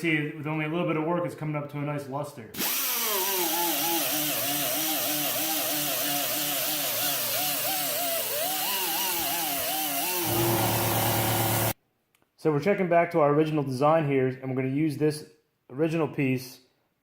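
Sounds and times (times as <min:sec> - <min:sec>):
die grinder whining on metal: 0:02.6 - 0:11.8.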